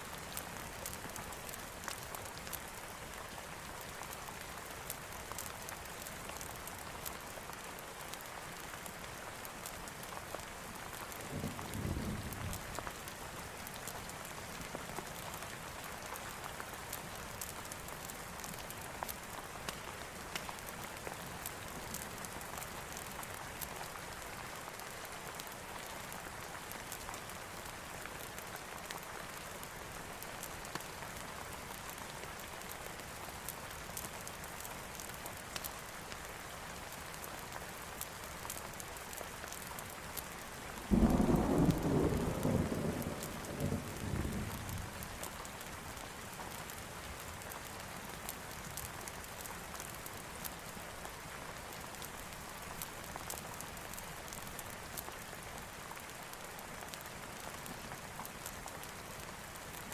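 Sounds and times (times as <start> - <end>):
steady rain falling: 0.0 - 59.9
low thunder rumble: 40.9 - 45.0.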